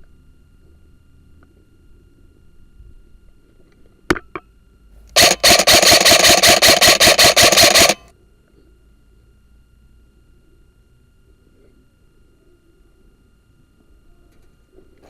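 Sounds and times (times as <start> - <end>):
airsoft gun rapid burst: 5.2 - 8.1.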